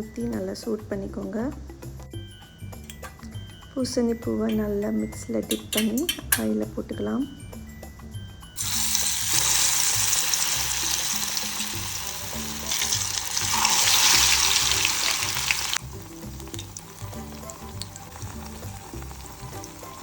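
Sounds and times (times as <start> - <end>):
food deep-frying in oil: 8.6 - 20.0.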